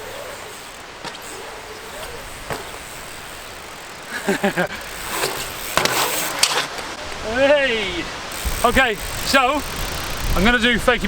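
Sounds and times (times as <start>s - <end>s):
wind noise on microphone: 6.9s - 11.0s.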